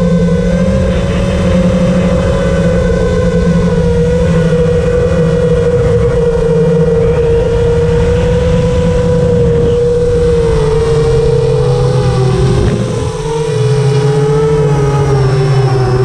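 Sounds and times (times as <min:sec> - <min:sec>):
drone motors whining: 0:00.0 - 0:16.0.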